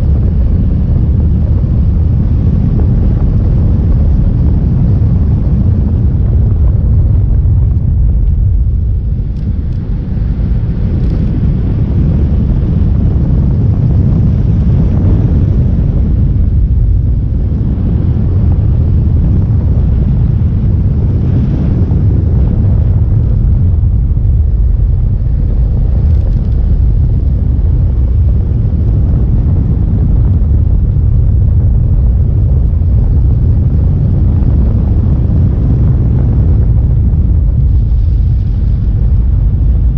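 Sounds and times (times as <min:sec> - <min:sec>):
motorcycle engine rumble: 0:00.0 - 0:39.9
wind buffeting microphone: 0:00.0 - 0:39.9.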